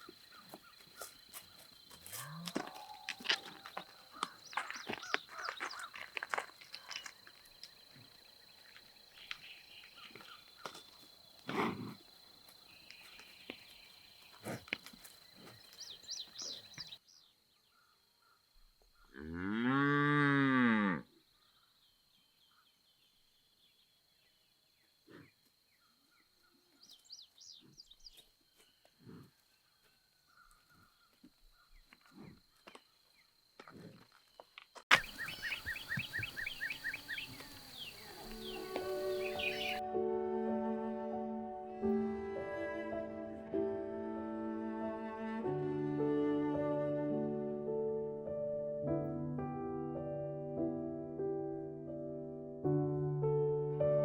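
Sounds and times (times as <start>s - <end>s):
cow mooing: 19.1s - 21.0s, 38.0s - 39.8s
faint bird chirps: 34.9s - 39.8s.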